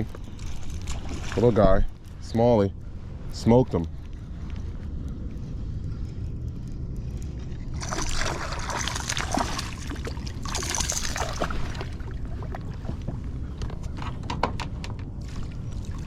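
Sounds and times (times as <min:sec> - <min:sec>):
low steady rumble: 0:00.0 - 0:16.0
fish splashing in water: 0:07.8 - 0:13.0.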